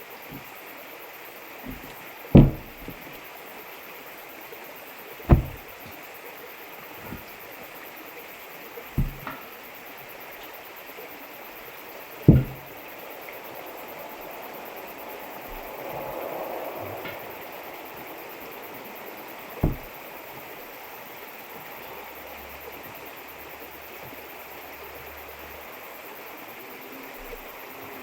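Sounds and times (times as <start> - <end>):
dull thumps on tank: 1.7 - 3.2, 5.3 - 5.9, 7.0 - 7.4, 9.0 - 9.5, 12.3 - 12.8, 19.6 - 20.4.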